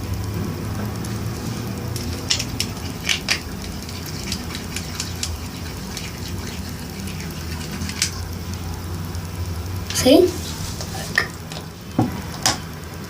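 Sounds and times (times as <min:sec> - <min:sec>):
steady low hum: 0:00.0 - 0:13.0
utensil stirring slime: 0:00.9 - 0:09.2, 0:09.8 - 0:12.7.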